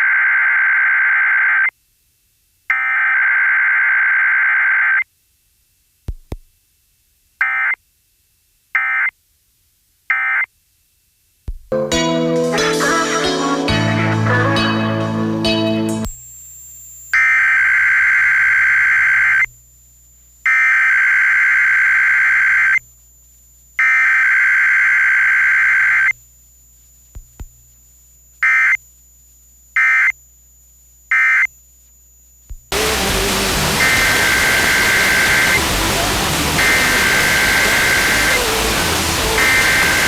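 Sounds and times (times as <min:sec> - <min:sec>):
song on radio: 0:11.8 - 0:16.1, 0:32.7 - 0:40.0
loud static hiss: 0:32.7 - 0:40.0
screechy digital data bursts: 0:32.7 - 0:40.0.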